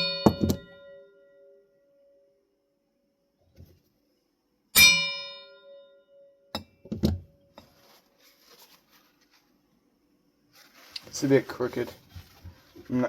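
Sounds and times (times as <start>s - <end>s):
dull knocks of metal parts: 0.0s - 0.8s
metal part ringing when struck: 0.0s - 1.6s, 4.8s - 6.8s.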